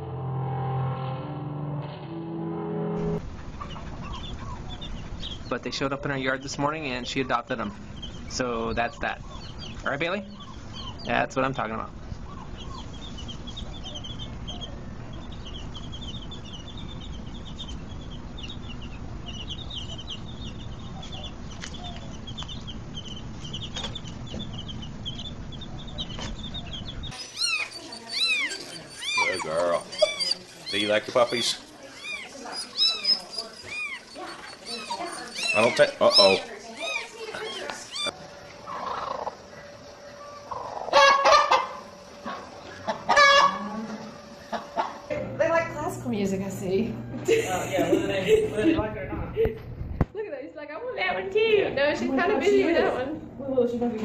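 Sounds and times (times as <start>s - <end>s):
chicks peeping: 3.2s - 46.0s
bird honking calls: 3.5s - 45.1s
low steady rumble: 43.5s - 50.1s.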